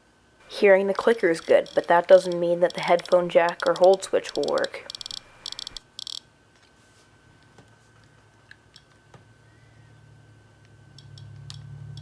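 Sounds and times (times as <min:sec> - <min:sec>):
faint high whine: 0:00.4 - 0:05.8
click-wheel ticks: 0:00.5 - 0:06.2.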